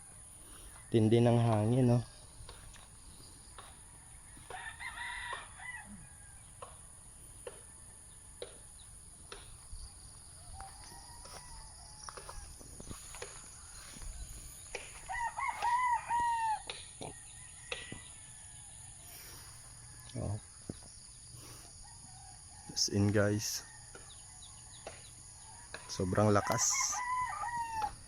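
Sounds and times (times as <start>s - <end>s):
rooster crowing: 3.6s - 6.8s, 10.0s - 20.6s, 21.7s - 28.0s.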